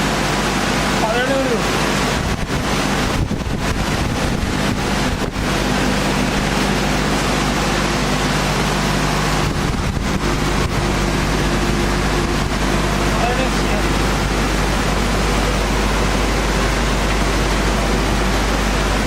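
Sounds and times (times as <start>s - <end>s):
woodworking machinery rushing: 0.0s - 19.0s
low hum: 2.0s - 19.0s.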